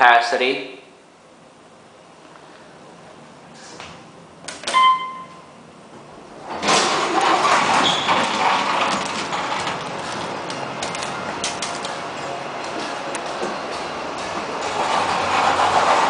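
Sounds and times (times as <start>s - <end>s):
elevator doors rumbling: 3.2s - 16.0s
elevator chime: 4.7s - 5.6s.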